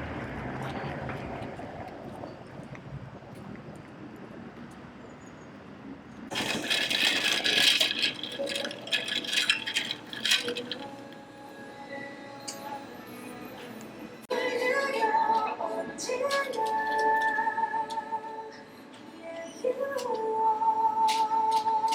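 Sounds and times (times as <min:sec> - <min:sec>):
crinkling and rattling: 0:06.3 - 0:11.1.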